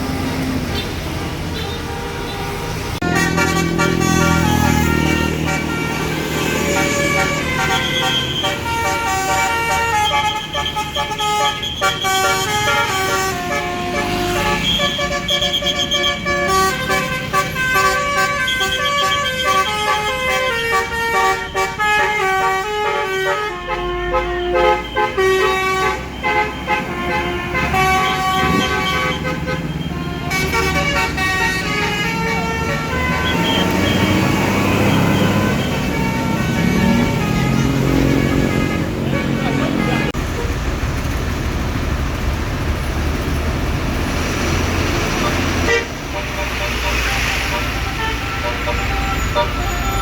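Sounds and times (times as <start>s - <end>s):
bus horn playing a tune: 0.0s - 40.5s, 45.1s - 50.0s
engine and traffic noise: 0.0s - 50.0s.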